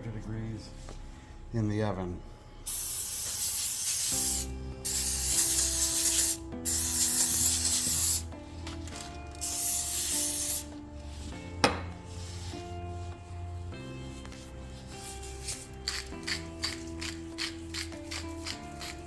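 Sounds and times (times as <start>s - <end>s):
aerosol spray hissing: 2.7s - 8.3s, 9.4s - 10.7s.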